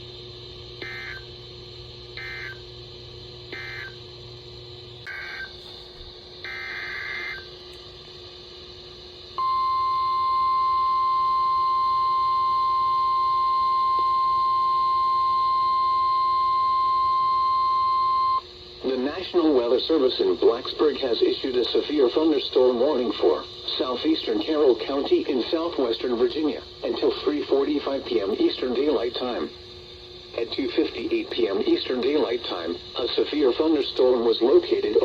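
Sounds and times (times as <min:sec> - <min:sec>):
loud steady alarm beep: 0:00.8 - 0:01.3, 0:02.2 - 0:02.6, 0:03.5 - 0:04.0, 0:05.1 - 0:05.6, 0:06.4 - 0:07.5, 0:09.4 - 0:18.5
short digital data buzzes: 0:00.8 - 0:01.3, 0:02.2 - 0:02.6, 0:03.5 - 0:04.0, 0:05.1 - 0:05.6, 0:06.4 - 0:07.5.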